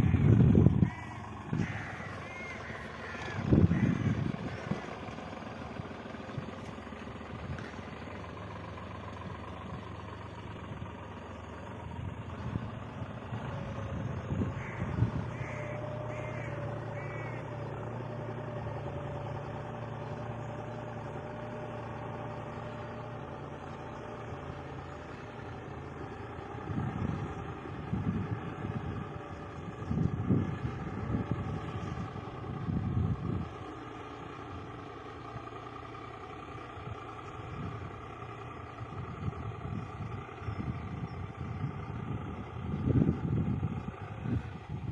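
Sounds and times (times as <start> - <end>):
bird calling: 0.0 - 7.0, 14.4 - 18.8
tractor diesel engine running: 0.0 - 44.9.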